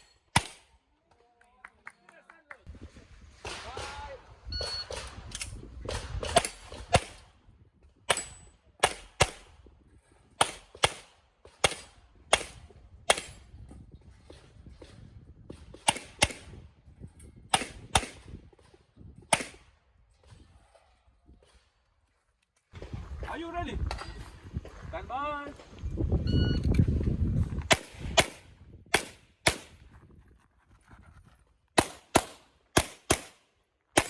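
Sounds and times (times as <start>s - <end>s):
handgun shots in quick pairs: 8.1s - 9.5s, 10.4s - 13.4s, 15.7s - 16.6s, 17.5s - 18.3s, 19.3s - 19.6s, 27.7s - 29.8s, 31.8s - 33.4s.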